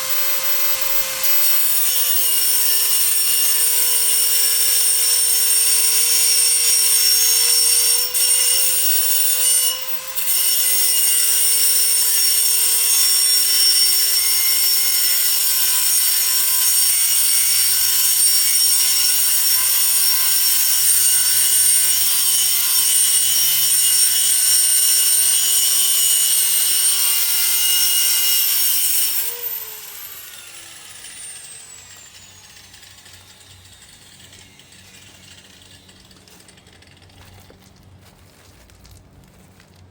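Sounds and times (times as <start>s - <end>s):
angle grinder cutting metal: 0.0s - 37.6s
grinder disc spinning down: 29.1s - 37.1s.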